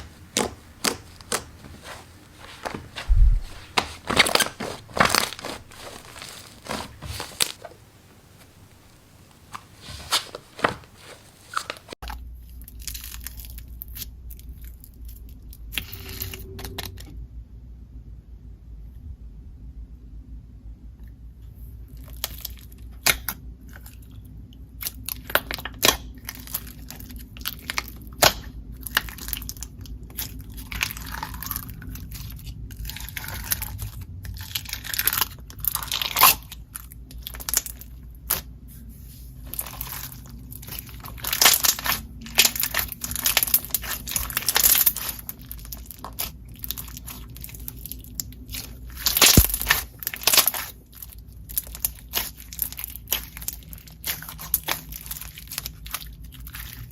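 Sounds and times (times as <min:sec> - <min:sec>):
slime crackling and popping: 0:00.0 - 0:12.0, 0:24.8 - 0:38.5, 0:39.4 - 0:56.9.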